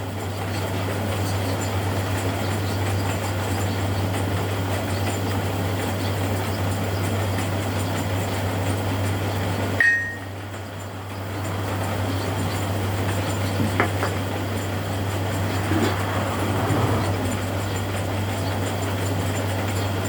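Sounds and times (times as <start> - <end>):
ringing metallic clink: 9.8 - 10.3.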